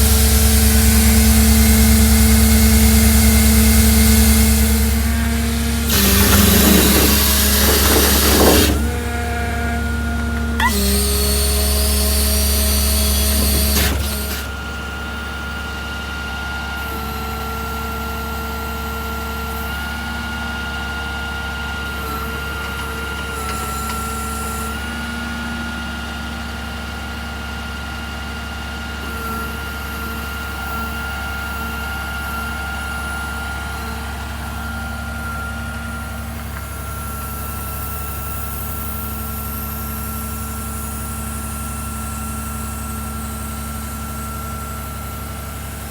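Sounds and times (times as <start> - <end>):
diesel truck engine running: 0.0 - 15.8.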